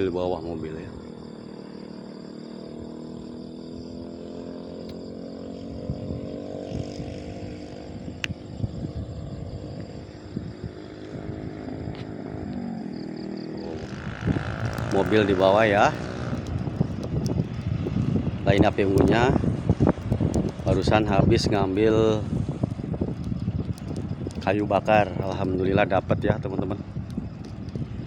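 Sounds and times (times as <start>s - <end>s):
low crackles: 0.0s - 28.0s
vehicle engine running under load: 0.9s - 21.2s.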